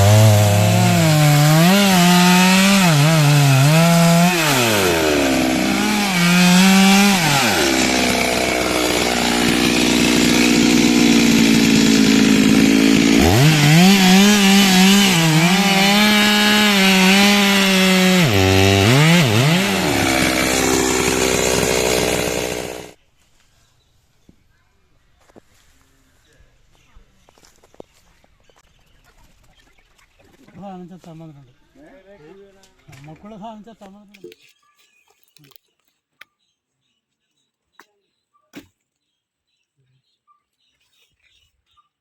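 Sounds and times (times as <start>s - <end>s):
chainsaw cutting wood: 0.0s - 23.0s.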